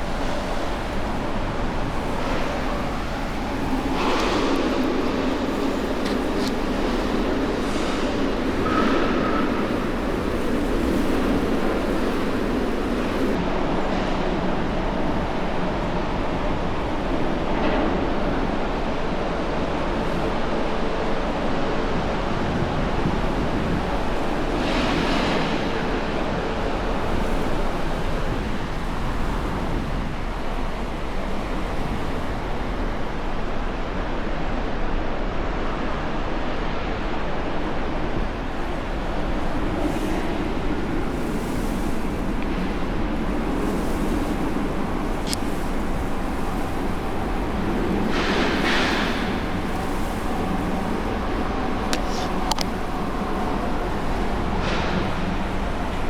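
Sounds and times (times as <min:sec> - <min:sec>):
wind blowing over microphone: 0:00.0 - 0:56.0.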